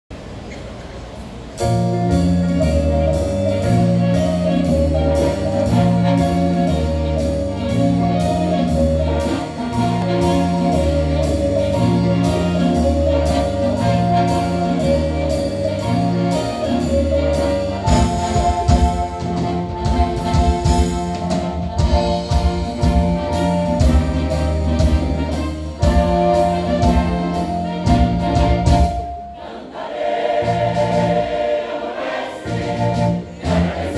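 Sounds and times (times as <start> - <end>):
band with brass and drums: 1.4 - 33.9.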